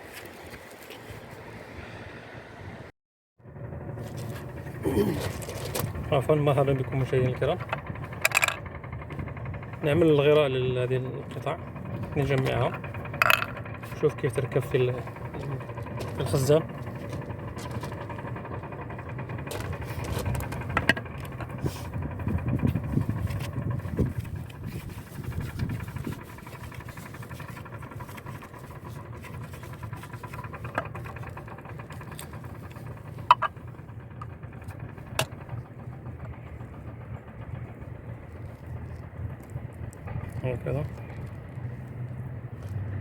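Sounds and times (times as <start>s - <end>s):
motor-like hum: 0.0s - 43.0s
plastic pipe fittings clicking: 24.1s - 33.6s.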